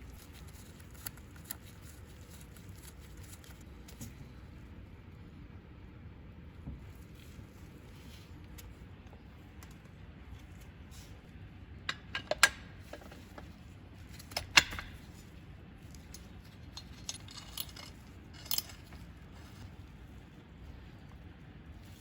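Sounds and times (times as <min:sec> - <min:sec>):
metal parts clinking: 0:16.0 - 0:19.1.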